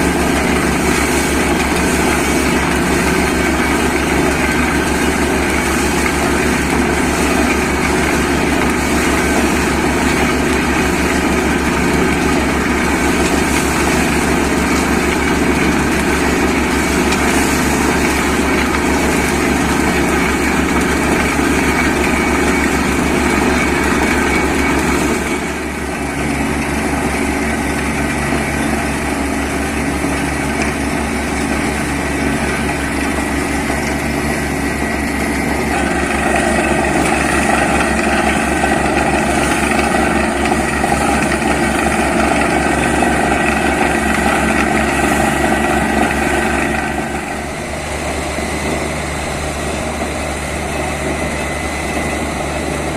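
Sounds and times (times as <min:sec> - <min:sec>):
drilling rig engine running: 0:00.0 - 0:52.9.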